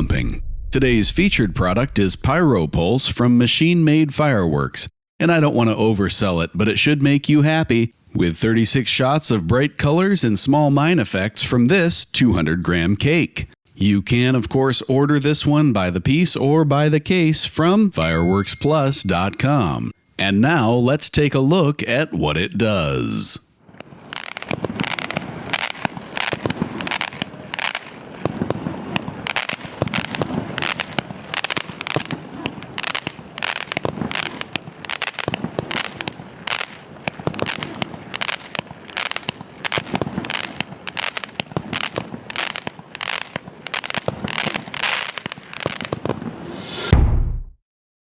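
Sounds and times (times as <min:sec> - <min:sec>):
fireworks cake firing: 0:23.8 - 0:47.6.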